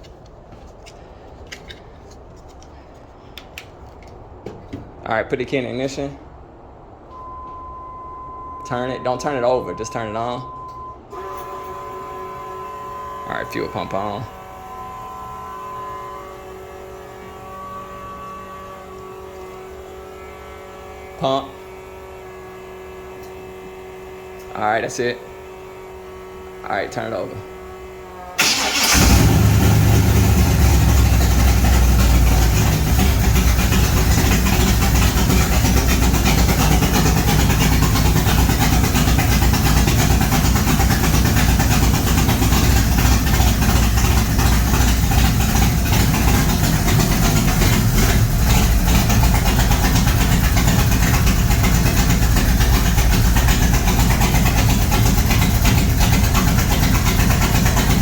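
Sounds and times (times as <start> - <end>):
car engine starting and idling: 27.7 - 58.0.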